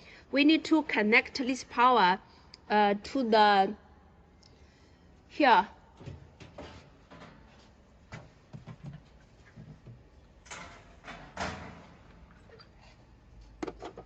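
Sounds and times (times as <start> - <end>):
light handling knocks and rustles: 6.0 - 10.1.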